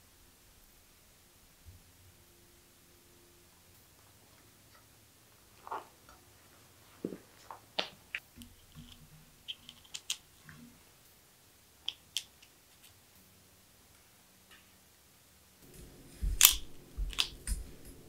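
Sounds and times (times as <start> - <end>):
bicycle parts and tools clicking: 7.8 - 10.6, 11.8 - 13.0, 16.3 - 17.6.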